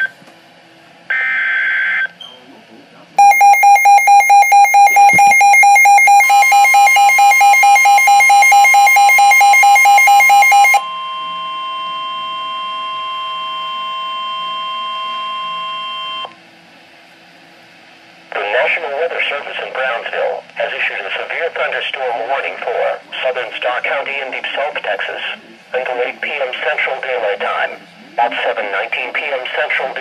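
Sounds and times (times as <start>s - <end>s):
alarm beeping rapidly: 3.2s - 16.2s
higher alarm tone: 3.2s - 16.3s
steady warning tone: 3.2s - 16.3s.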